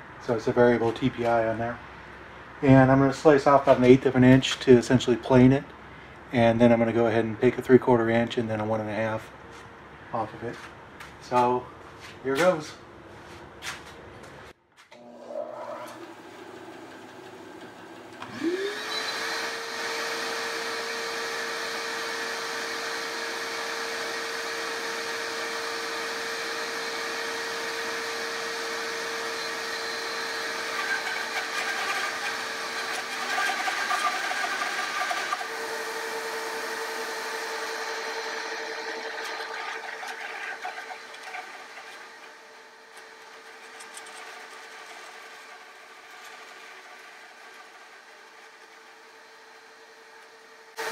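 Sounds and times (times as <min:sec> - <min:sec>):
bandsaw motor hum: 0:15.0 - 0:50.9
bandsaw cutting wood: 0:18.2 - 0:49.8.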